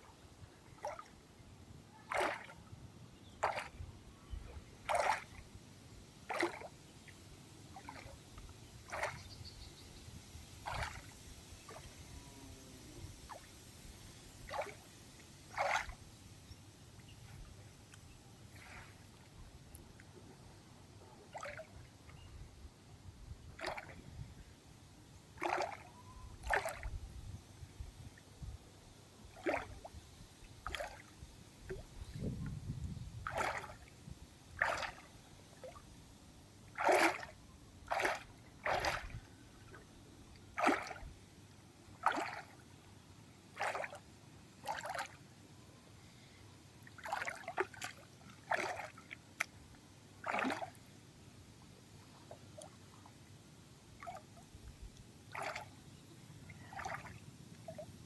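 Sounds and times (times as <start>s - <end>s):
water splashing and sloshing: 0.6s - 1.2s, 2.0s - 2.7s, 3.4s - 3.9s, 4.5s - 5.6s, 6.2s - 9.5s, 10.1s - 12.1s, 13.2s - 16.2s, 17.2s - 20.5s, 21.2s - 22.0s, 23.5s - 24.5s, 25.3s - 28.6s, 29.2s - 36.0s, 36.6s - 41.3s, 41.9s - 45.3s, 46.8s - 51.0s, 51.8s - 53.3s, 54.0s - 57.9s.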